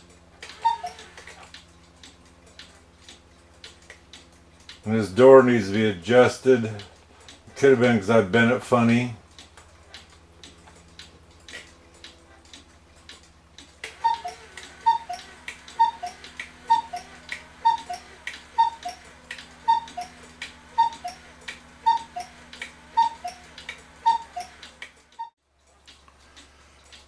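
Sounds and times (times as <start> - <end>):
cuckoo clock ticking: 0.0 - 27.0
faint small motor hum: 0.0 - 27.0
two-note cuckoo call: 0.4 - 1.4, 13.9 - 25.3.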